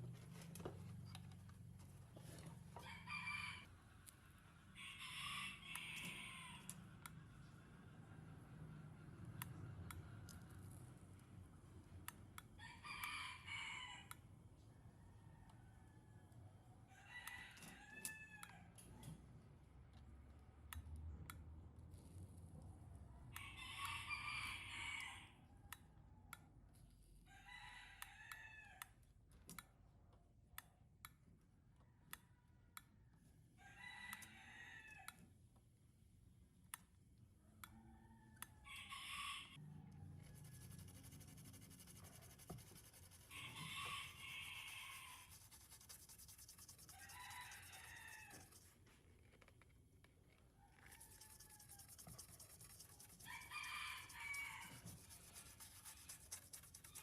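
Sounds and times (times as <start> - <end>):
roosters crowing: 4.8 - 6.7, 38.6 - 39.6, 43.3 - 45.4, 46.9 - 48.7, 53.1 - 56.1.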